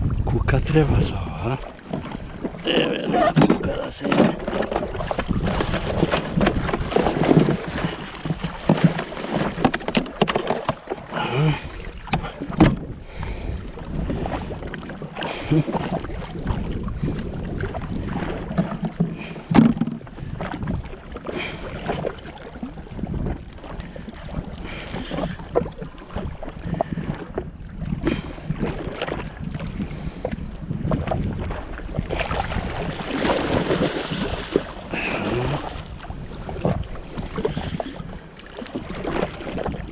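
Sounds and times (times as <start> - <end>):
wind buffeting microphone: 0.0 - 9.9, 11.2 - 39.9
water noise around jetski: 0.0 - 39.9
knocks and bumps: 18.6 - 20.0.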